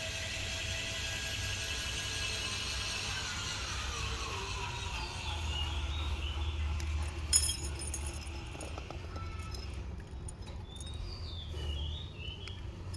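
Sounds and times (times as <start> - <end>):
light metallic clinks: 6.8 - 11.0.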